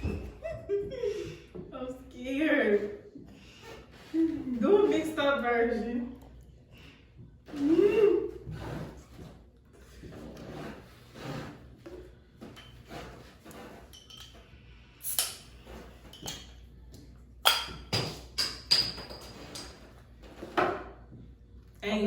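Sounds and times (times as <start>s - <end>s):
glass bottles clinking: 13.9s - 14.5s, 16.0s - 16.6s, 17.4s - 19.7s.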